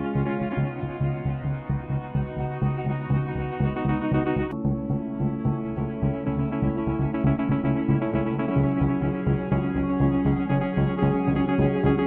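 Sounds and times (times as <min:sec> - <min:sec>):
music with held chords and pulsing bass: 0:00.0 - 0:12.0.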